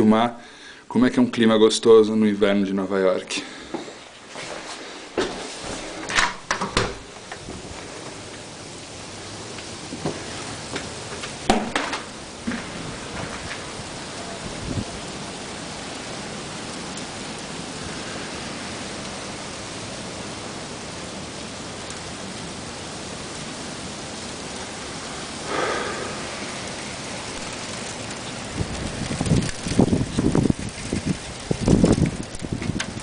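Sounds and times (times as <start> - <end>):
freezing rain hissing: 0.0 - 0.9, 3.1 - 33.0.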